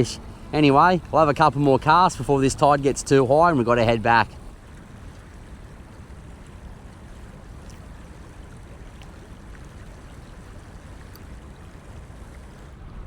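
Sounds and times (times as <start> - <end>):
water at shoreline: 0.0 - 13.0
wind: 0.0 - 13.0
faint ticks: 7.6 - 12.6.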